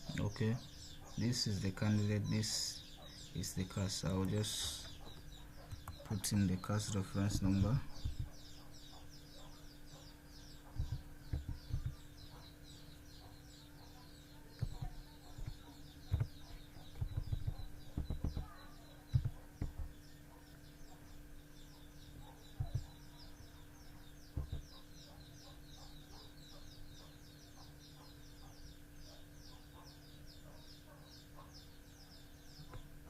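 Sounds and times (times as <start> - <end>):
birds chirping: 0.0 - 33.0
faint chicken clucks: 0.0 - 33.0.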